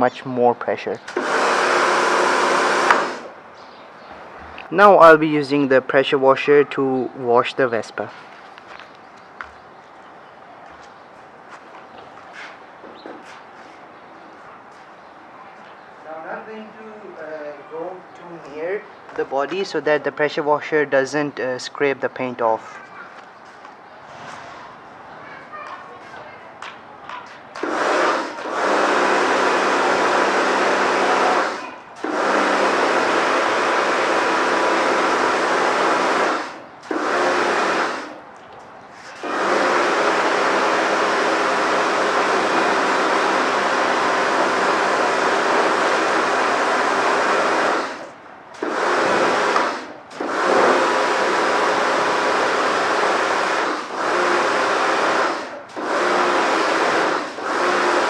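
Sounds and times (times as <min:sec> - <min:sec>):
pressure washer pump humming: 0:00.7 - 0:03.4, 0:27.6 - 0:38.2, 0:39.0 - 0:58.0
water spraying: 0:01.1 - 0:03.3, 0:27.6 - 0:38.2, 0:39.1 - 0:58.0.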